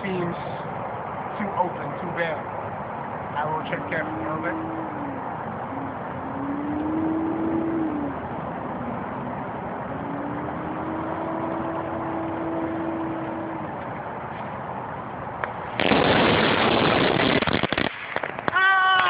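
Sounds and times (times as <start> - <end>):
steady background hum: 0.0 - 18.5
loud blast with hiss: 15.7 - 18.6.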